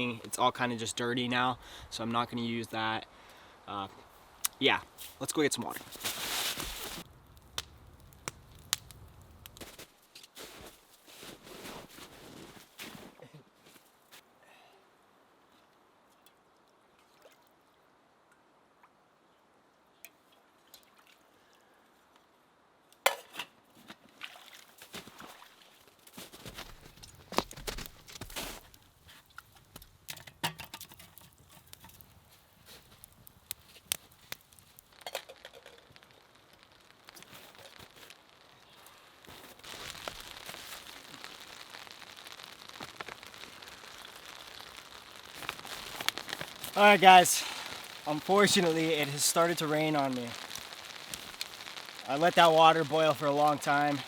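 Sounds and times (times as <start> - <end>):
faint steady hiss: 0.0 - 54.0
rain falling: 4.0 - 7.2, 33.6 - 54.0
meltwater dripping: 24.8 - 54.0
raindrops ticking on a surface: 30.9 - 54.0.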